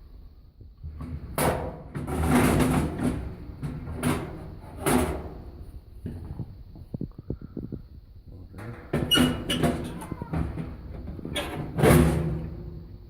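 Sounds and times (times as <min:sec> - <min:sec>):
scraping of fan blower housing: 0:01.4 - 0:06.5, 0:08.6 - 0:12.7.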